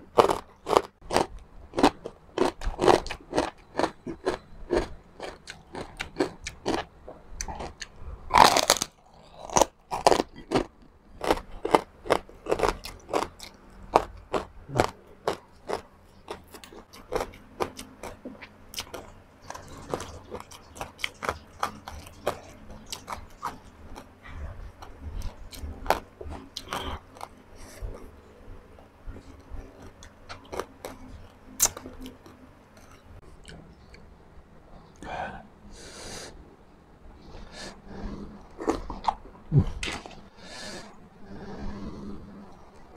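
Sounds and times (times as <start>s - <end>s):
crunching and chewing crispy food: 0.0s - 34.1s, 37.3s - 41.0s.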